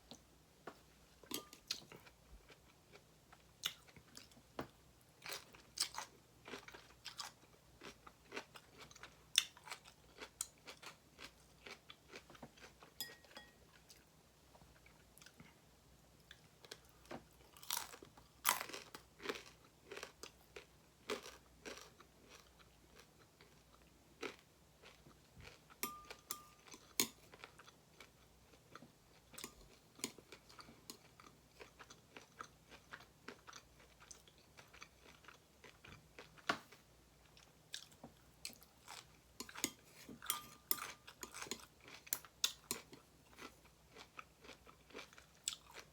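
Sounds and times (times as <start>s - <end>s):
crisp crunching while chewing: 17.5s - 23.0s.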